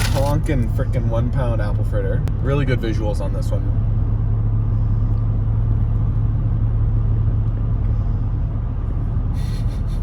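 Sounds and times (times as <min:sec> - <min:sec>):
rustling: 0:00.0 - 0:00.4
truck engine and road drone: 0:00.0 - 0:10.0.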